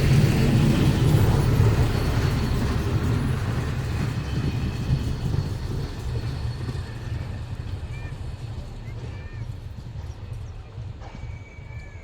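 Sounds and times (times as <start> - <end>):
train rumbling past: 0.0 - 12.0.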